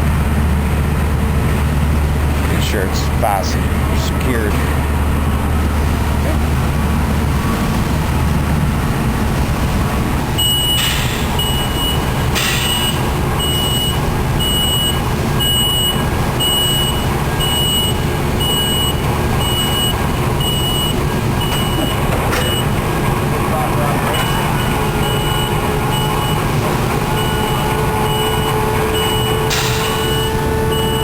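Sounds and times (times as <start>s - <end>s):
engine idling: 0.0s - 31.0s
reversing alarm beeps: 10.4s - 22.8s, 24.1s - 26.5s, 27.1s - 31.0s
short hisses: 10.8s - 11.4s, 12.4s - 13.0s.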